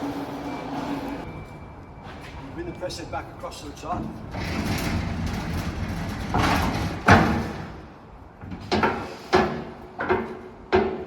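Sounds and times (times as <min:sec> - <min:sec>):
loud metal clunk: 0:04.3 - 0:07.8.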